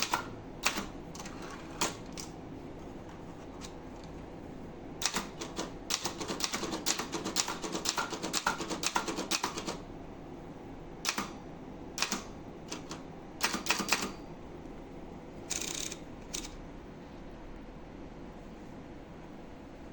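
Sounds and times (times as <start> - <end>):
typewriter mechanical rasp: 5.0 - 9.8, 12.0 - 14.2
typewriter key strikes: 12.0 - 14.2.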